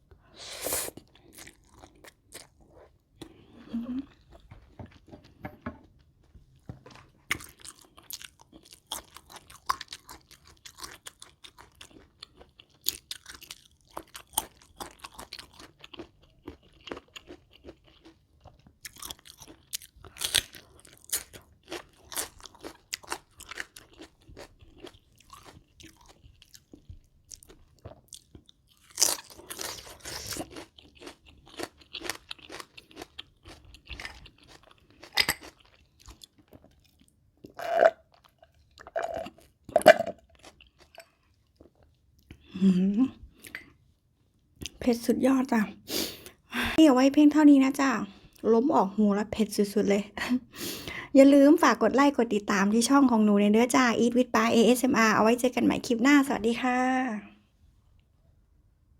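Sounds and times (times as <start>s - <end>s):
chewing and crunching: 0.9s - 42.5s.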